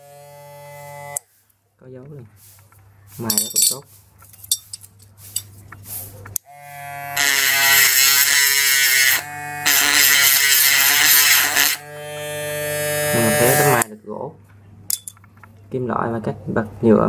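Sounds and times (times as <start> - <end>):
mini drill grinding whine: 6.5 - 13.8.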